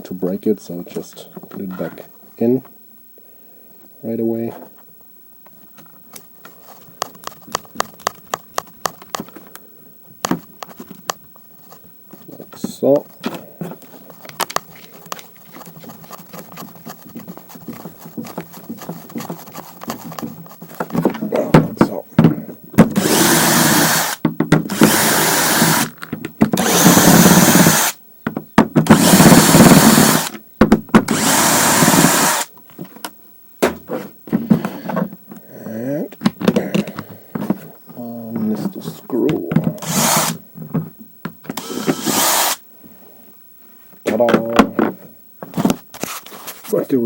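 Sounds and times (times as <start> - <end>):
cordless screwdriver whirring: 23.0 - 26.0, 26.6 - 28.0, 28.9 - 30.3, 31.1 - 32.5, 39.8 - 40.4, 41.6 - 42.6.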